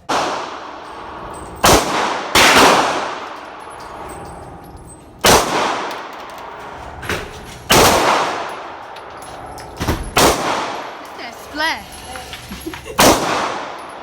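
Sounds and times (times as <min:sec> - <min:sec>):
gunshots with echo: 0:00.0 - 0:03.6, 0:05.2 - 0:06.1, 0:07.7 - 0:08.8, 0:10.2 - 0:11.0, 0:13.0 - 0:14.0.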